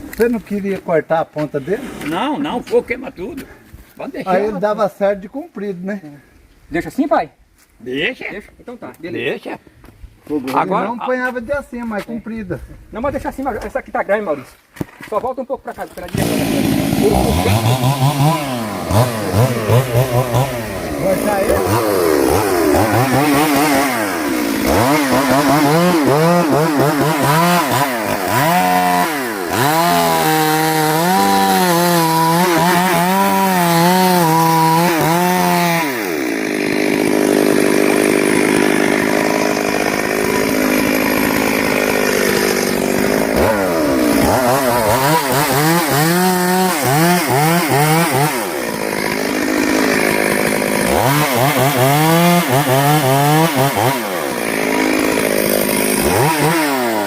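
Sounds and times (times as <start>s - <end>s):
chainsaw cutting wood: 1.4s - 2.6s, 15.8s - 57.0s.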